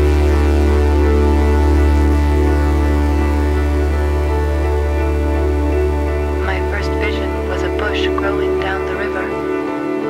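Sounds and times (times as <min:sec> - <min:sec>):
synthesizer pad with deep bass: 0:00.0 - 0:10.0.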